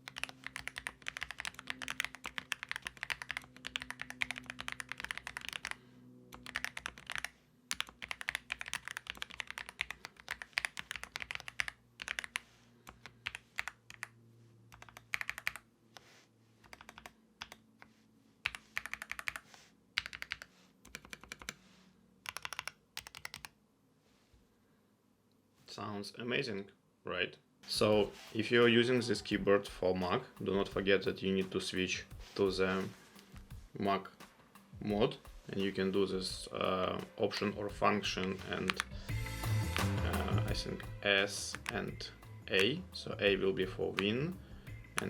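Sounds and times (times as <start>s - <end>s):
mechanical keyboard typing: 0.0s - 14.1s, 14.7s - 15.7s, 16.6s - 17.6s, 18.4s - 21.6s, 22.2s - 23.6s, 39.8s - 41.9s.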